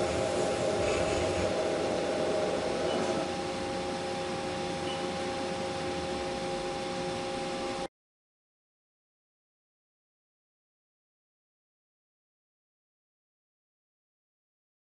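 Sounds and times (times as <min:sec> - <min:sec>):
machine tool whining: 0:00.0 - 0:07.0.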